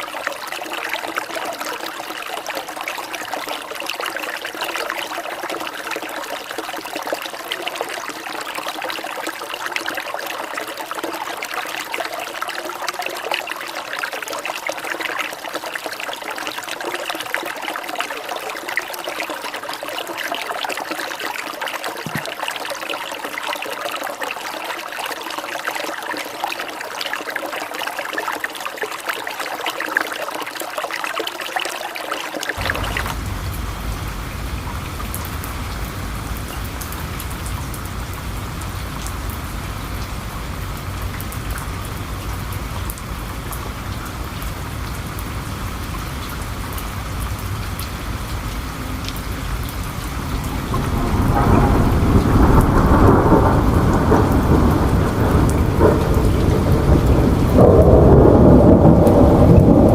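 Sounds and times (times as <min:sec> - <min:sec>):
heavy rain: 0:00.0 - 0:30.6, 0:32.5 - 0:59.9
water trickling and splashing: 0:00.0 - 0:59.9
low rumble: 0:32.6 - 0:45.0, 0:49.7 - 0:59.9.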